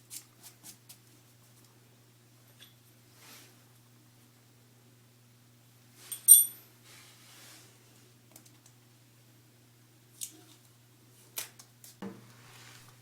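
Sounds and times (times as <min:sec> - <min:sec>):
metal object clinking: 0:06.1 - 0:06.6.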